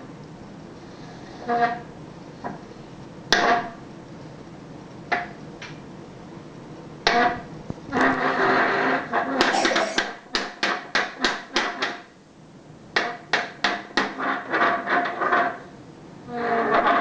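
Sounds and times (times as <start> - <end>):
pitched vocal sounds: 9.5 - 10.1.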